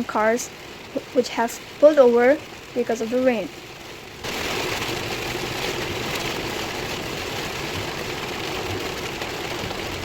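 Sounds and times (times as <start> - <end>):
heavy rain: 0.0 - 10.0.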